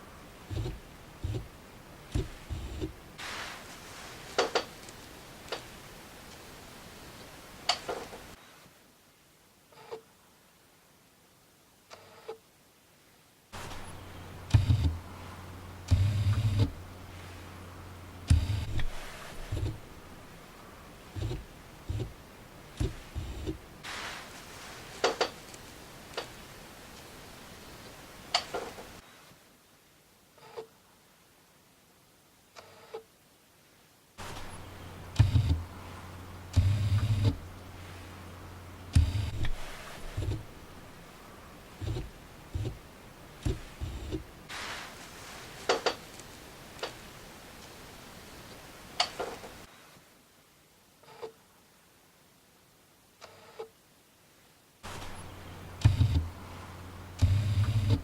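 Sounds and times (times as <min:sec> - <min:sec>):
lens autofocus whirring and clicking: 0:00.5 - 0:01.5, 0:02.1 - 0:03.0, 0:13.6 - 0:22.2, 0:22.8 - 0:23.6, 0:34.2 - 0:41.2, 0:41.8 - 0:42.8, 0:43.4 - 0:44.3, 0:54.9 - 0:58.0.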